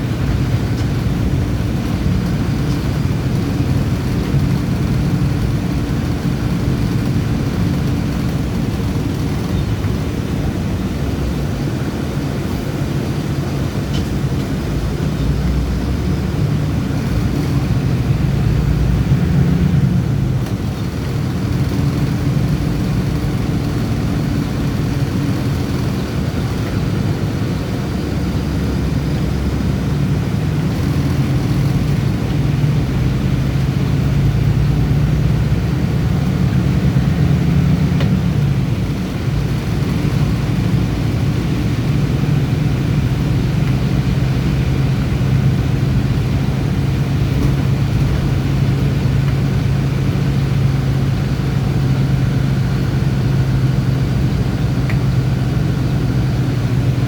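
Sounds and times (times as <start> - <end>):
bus diesel engine drone: 0.0 - 57.0.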